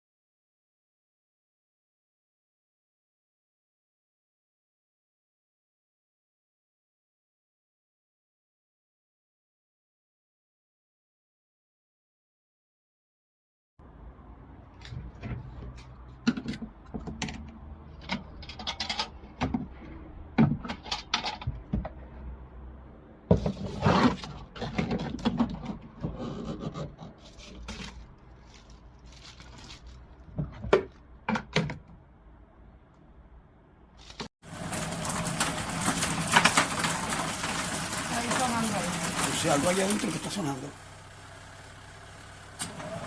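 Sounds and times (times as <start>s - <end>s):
knocking and rattling in machine: 34.4s - 40.6s
washing machine hum: 34.4s - 43.0s.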